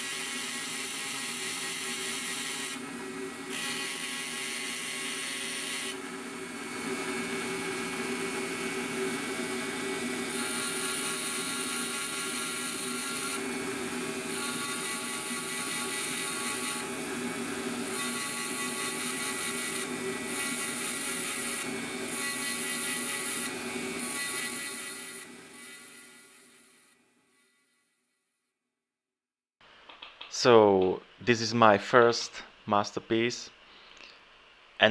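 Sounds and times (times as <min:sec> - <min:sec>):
rotary tool motor whine: 0:00.0 - 0:27.8.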